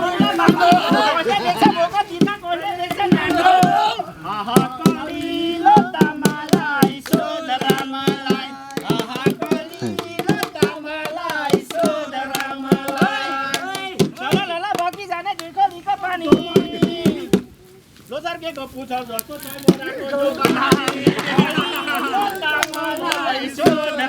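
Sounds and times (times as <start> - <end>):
person singing folk song: 0.0 - 24.0
hand percussion strikes: 4.5 - 15.5, 19.4 - 24.0.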